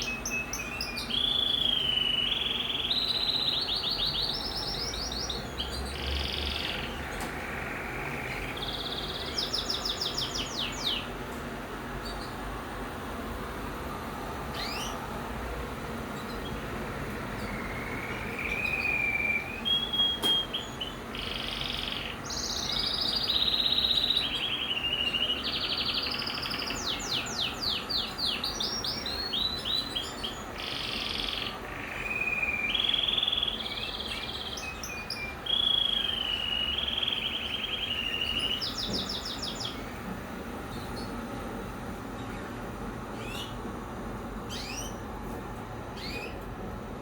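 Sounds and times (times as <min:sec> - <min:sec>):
canary singing trills and whistles: 0:00.0 - 0:11.1, 0:14.5 - 0:15.0, 0:17.3 - 0:39.9, 0:43.2 - 0:43.6, 0:44.5 - 0:45.0, 0:46.0 - 0:46.4.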